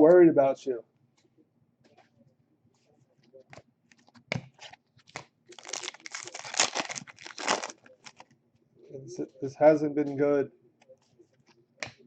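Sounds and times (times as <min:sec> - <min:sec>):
foil wrapper crinkling and tearing: 0:05.5 - 0:08.2.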